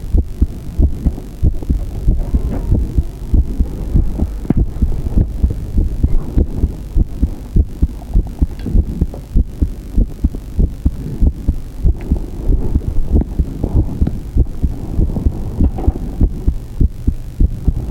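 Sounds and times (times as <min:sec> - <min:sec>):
heartbeat thuds: 0:00.0 - 0:17.9.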